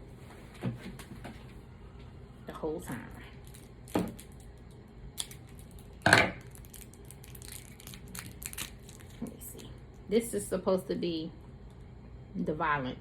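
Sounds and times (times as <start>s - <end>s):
gum wrapper crinkling: 3.4s - 10.0s.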